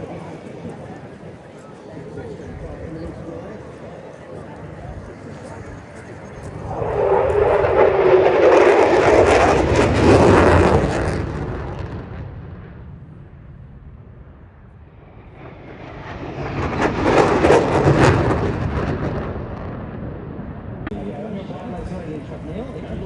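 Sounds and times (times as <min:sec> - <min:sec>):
aircraft flying low past: 0:04.7 - 0:20.9.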